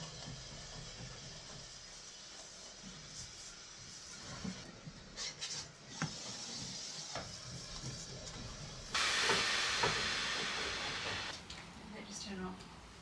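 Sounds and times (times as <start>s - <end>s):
steamer hissing: 8.9s - 11.3s.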